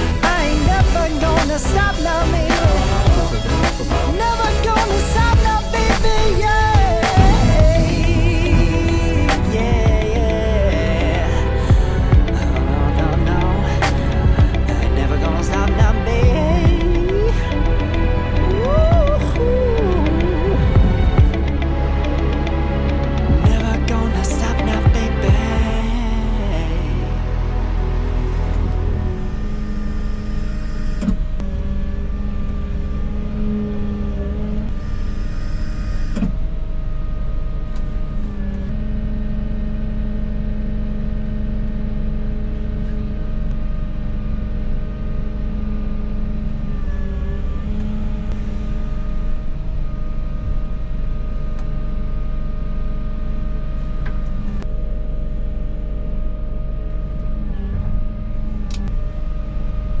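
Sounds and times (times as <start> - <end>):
excavator diesel engine running: 0.0 - 35.8.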